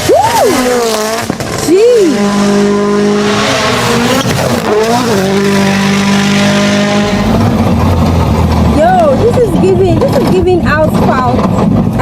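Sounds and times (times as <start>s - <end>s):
rally car engine at high revs: 0.0s - 12.0s.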